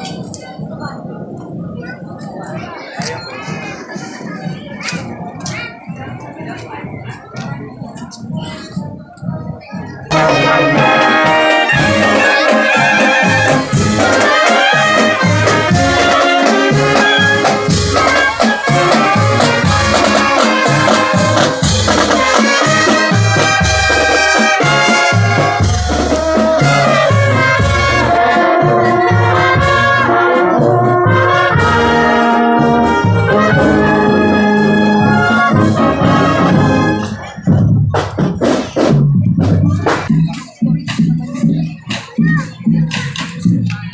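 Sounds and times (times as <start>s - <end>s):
marching band playing: 0.0s - 43.9s
trumpets and trombones: 9.7s - 41.2s.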